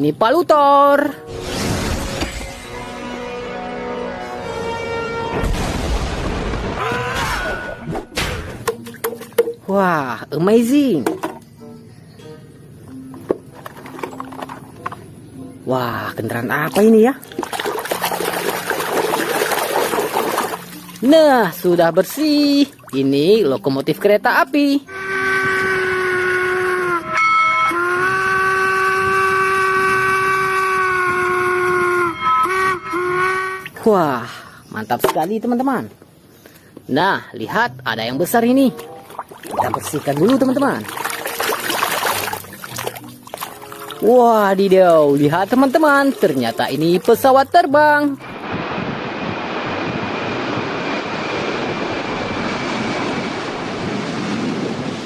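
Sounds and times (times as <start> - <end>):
train whistle blowing: 2.8 - 5.4, 24.9 - 33.8
airplane engine rushing: 48.2 - 55.0.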